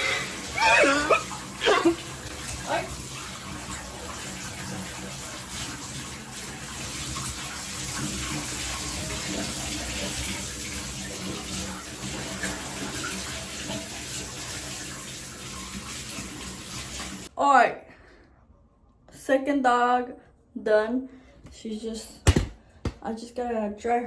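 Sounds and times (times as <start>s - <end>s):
water pouring into bathtub: 0.0s - 17.3s.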